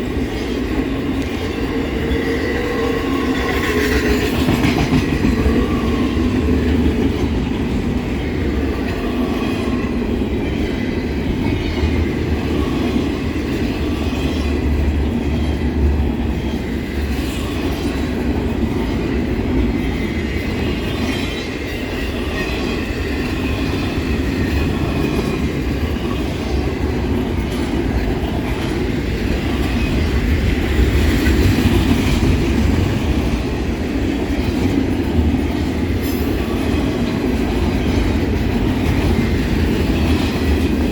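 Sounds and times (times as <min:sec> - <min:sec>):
freight train rumbling past: 0:00.0 - 0:40.9
wheels clacking over rail joints: 0:00.0 - 0:40.9.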